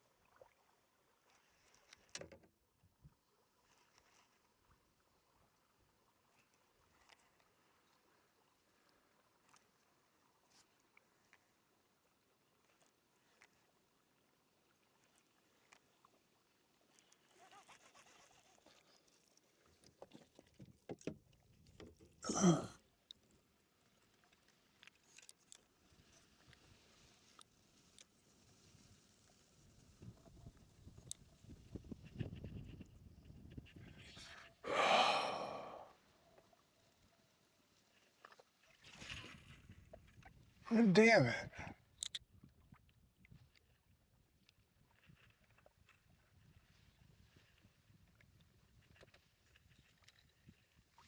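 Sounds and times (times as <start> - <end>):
person sighing: 22.2 - 22.8, 34.7 - 35.9, 40.7 - 41.6.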